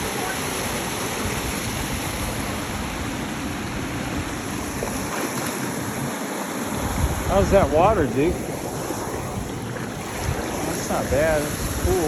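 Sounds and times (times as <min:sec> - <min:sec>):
stream rushing over cascades: 0:00.0 - 0:12.0.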